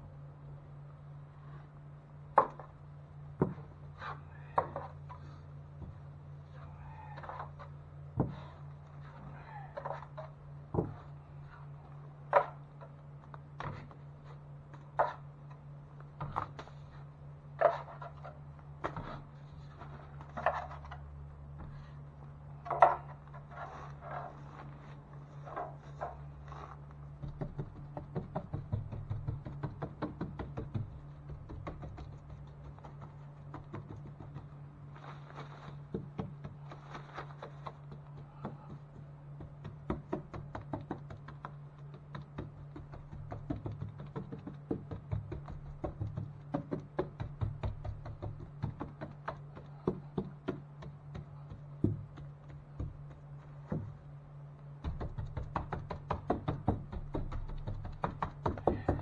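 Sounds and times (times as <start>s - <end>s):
steady low hum: 0.0s - 59.0s
sharp knocks and taps: 27.2s - 34.6s, 35.9s - 54.0s, 54.8s - 59.0s.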